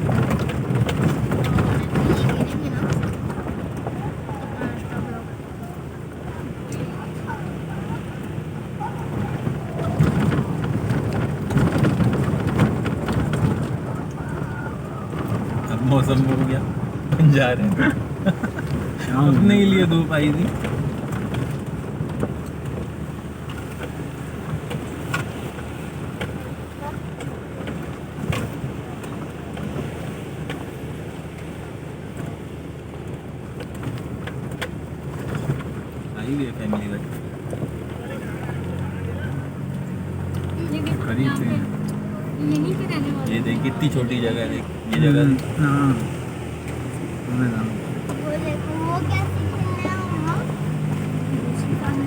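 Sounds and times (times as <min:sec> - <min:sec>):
crackles and knocks: 0:00.0 - 0:06.8, 0:08.2 - 0:52.0
diesel engine droning: 0:00.0 - 0:52.0
vehicle rumbling: 0:00.0 - 0:52.0
wind noise on microphone: 0:07.6 - 0:15.9.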